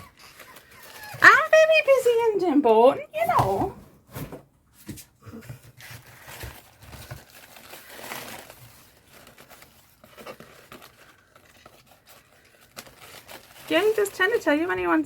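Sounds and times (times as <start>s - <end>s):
paper crinkling and rustling: 0.0s - 2.5s, 3.2s - 15.0s
paper tearing: 5.8s - 14.6s.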